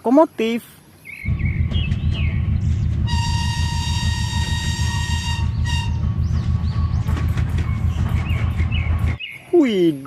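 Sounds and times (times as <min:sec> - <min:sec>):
train rumbling: 0:01.2 - 0:09.2
train horn: 0:01.3 - 0:07.0.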